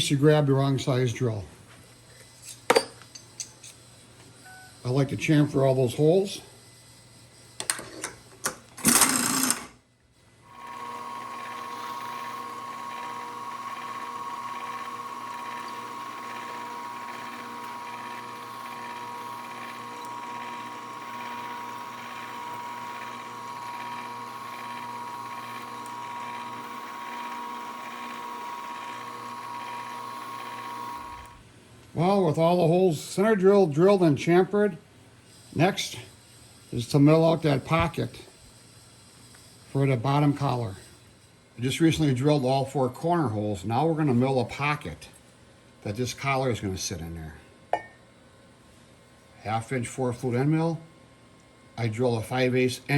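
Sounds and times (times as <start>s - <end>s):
milling machine spindle whine: 10.5s - 31.4s.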